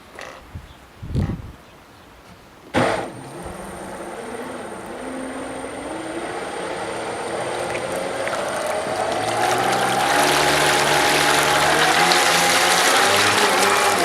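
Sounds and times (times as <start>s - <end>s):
churning water: 2.8s - 14.0s
high electric motor whine: 2.8s - 14.0s
rush of water: 2.8s - 14.0s.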